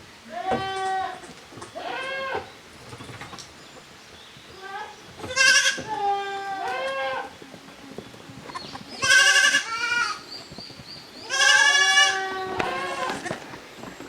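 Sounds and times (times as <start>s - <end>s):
goat kids bleating: 0.3s - 1.2s, 1.8s - 2.5s, 4.6s - 7.3s, 8.5s - 10.2s, 11.2s - 13.5s.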